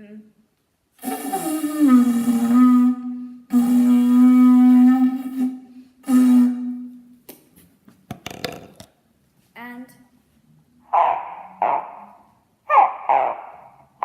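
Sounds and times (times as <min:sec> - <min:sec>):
person making breathy pitched noise: 0:01.0 - 0:02.6
sharp clicks and knocks: 0:08.0 - 0:09.0.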